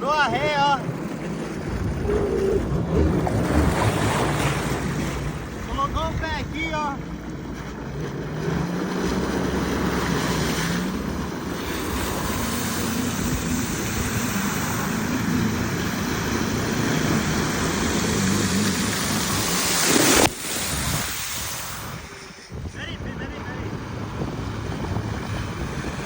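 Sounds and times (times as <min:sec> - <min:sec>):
jet ski engine running: 0:00.0 - 0:26.0
hissing water spray: 0:09.8 - 0:22.6.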